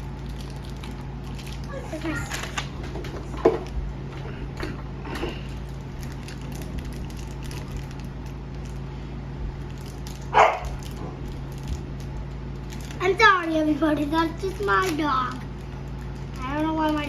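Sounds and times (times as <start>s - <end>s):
steady low hum: 0.0s - 17.0s
dog barking: 10.3s - 10.8s.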